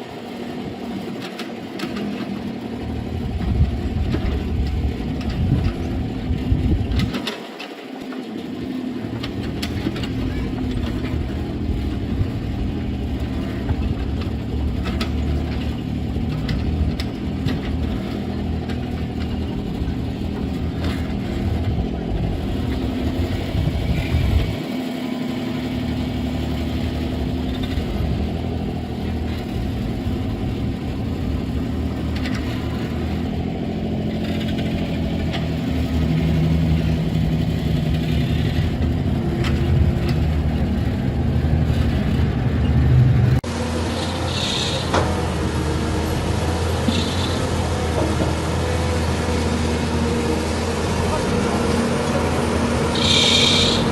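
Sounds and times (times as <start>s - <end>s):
heavy machinery diesel engine running: 0.0s - 53.9s.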